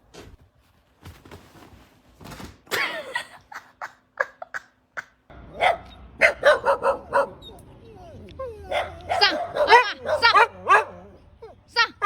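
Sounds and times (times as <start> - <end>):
dog barking: 5.4 - 12.0.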